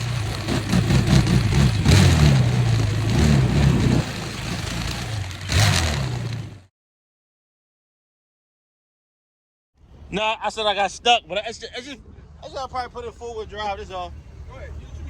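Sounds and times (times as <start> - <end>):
vehicle engine revving: 0.0 - 6.7.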